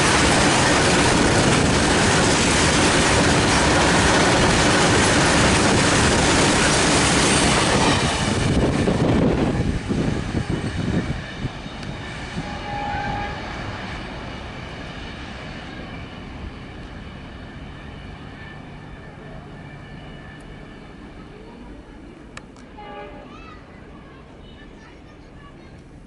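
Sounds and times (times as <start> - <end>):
train clanks: 0.0 - 13.2
train rumble: 0.0 - 26.0.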